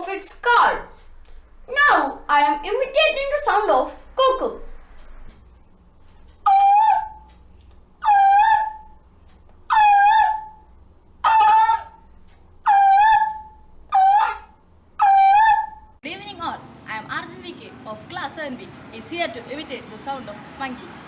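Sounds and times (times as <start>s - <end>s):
child imitating cuckoo call: 12.7s - 15.7s.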